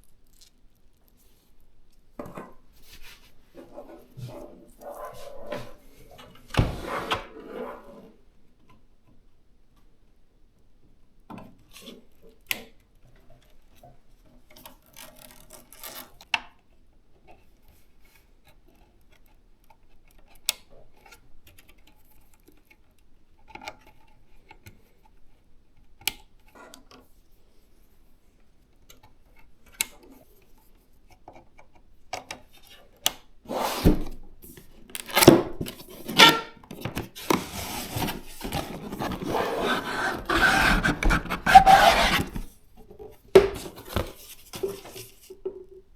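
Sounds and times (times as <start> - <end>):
rubbing and scraping: 2.8 - 8.2, 35.0 - 43.0.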